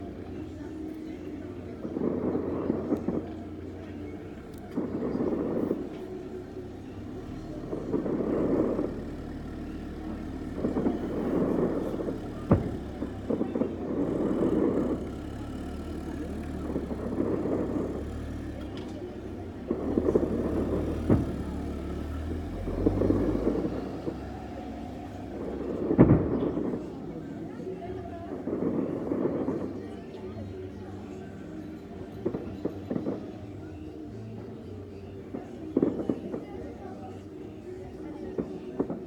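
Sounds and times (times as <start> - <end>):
distant fireworks booms: 1.7 - 31.1, 32.0 - 33.4, 35.4 - 36.8, 38.3 - 39.0
sharp firework cracks: 7.7 - 19.0, 19.6 - 24.3, 25.3 - 27.1.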